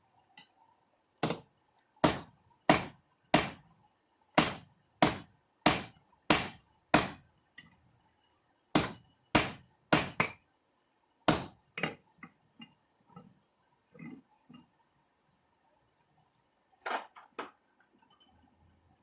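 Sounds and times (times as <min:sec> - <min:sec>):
hammer striking steel on anvil: 0:01.2 - 0:01.4, 0:02.0 - 0:03.6, 0:04.4 - 0:07.2, 0:08.8 - 0:10.4, 0:11.3 - 0:11.6.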